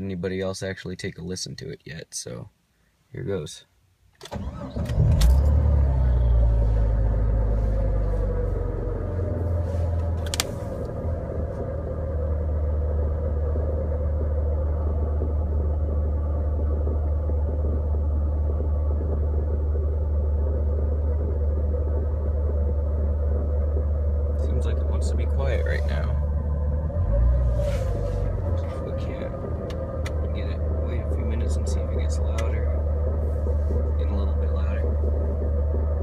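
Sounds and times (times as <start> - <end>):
car engine idling: 4.9 - 36.0
sharp click: 10.2 - 10.5.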